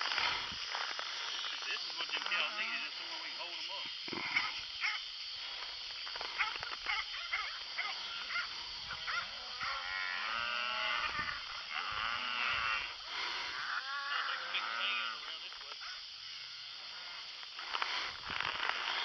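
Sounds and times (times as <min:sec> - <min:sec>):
cattle mooing: 0:09.0 - 0:15.2
rustles and clicks: 0:17.1 - 0:19.0.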